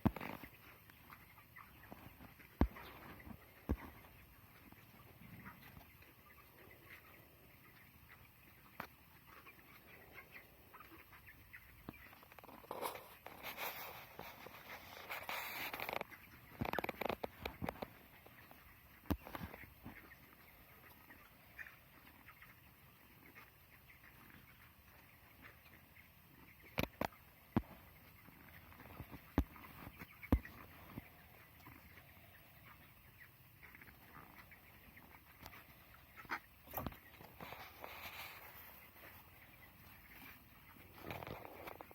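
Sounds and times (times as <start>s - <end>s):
rustling: 0.0s - 7.3s, 11.9s - 32.4s, 33.6s - 41.9s
chicks peeping: 0.0s - 41.9s
rustling and scuffling: 12.1s - 20.8s, 35.4s - 41.9s.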